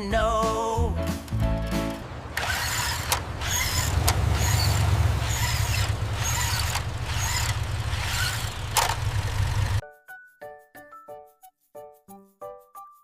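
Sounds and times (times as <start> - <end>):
car engine running: 2.0 - 9.8.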